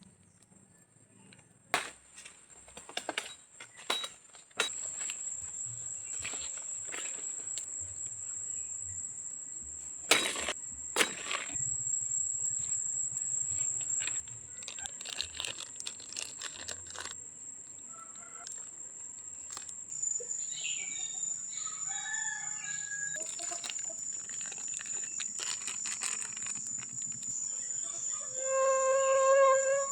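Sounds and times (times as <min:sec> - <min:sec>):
rooster crowing: 0:17.9 - 0:18.6, 0:21.5 - 0:23.3.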